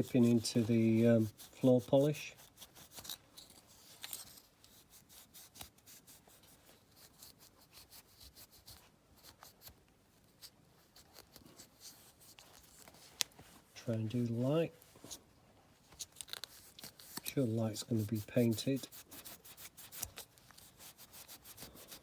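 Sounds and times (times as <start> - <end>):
cloth rubbing on plastic: 0.0 - 3.9, 16.3 - 22.0.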